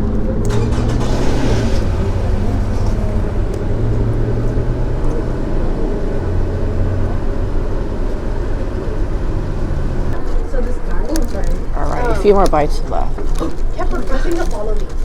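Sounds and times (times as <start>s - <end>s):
low hum: 0.4s - 10.2s.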